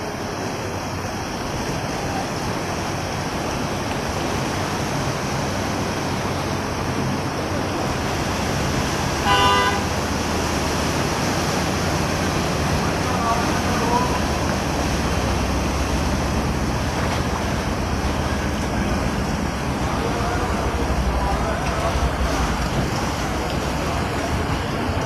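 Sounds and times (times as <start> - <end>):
rain hissing: 2.0 - 25.0
vehicle horn: 9.2 - 10.0.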